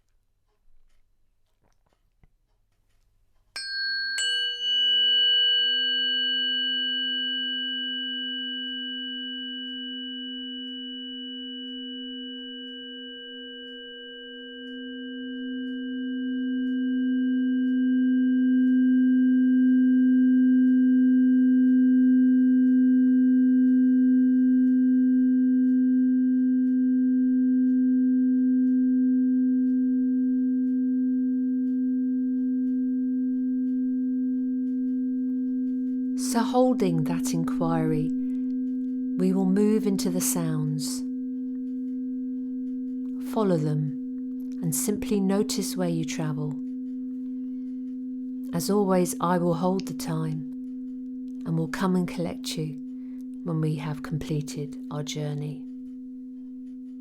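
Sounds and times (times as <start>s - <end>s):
singing bowl ringing: 3.6s - 51.6s.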